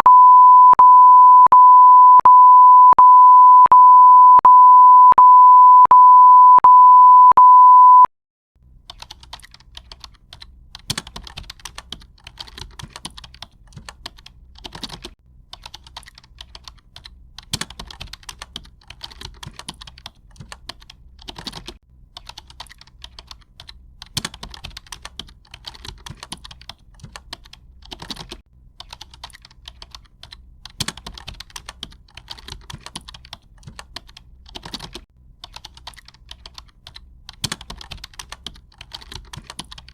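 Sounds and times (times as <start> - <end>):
high beep tone: 0.0 - 8.1
keyboard typing clicks: 8.9 - 39.9.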